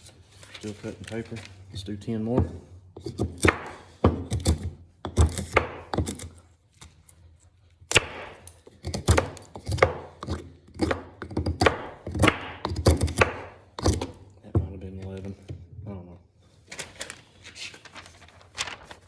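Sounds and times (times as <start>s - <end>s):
knife slicing wood: 3.0s - 6.4s.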